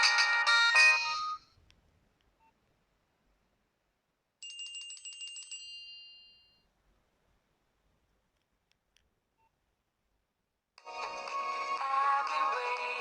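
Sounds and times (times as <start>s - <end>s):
polyphonic ringtone melody: 0.0s - 1.4s.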